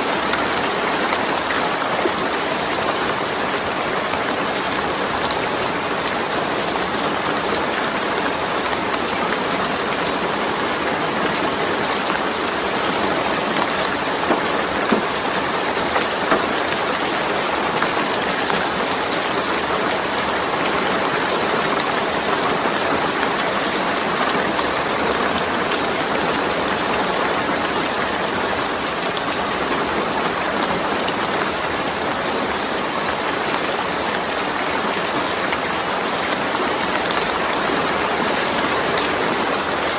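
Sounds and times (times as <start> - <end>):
rain on a metal roof: 0.0 - 39.9.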